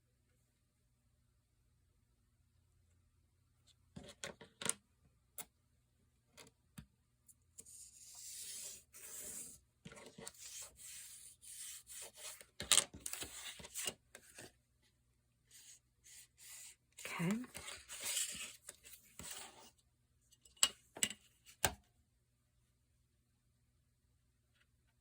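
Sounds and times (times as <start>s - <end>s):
paper sliding and rubbing: 7.6s - 9.6s.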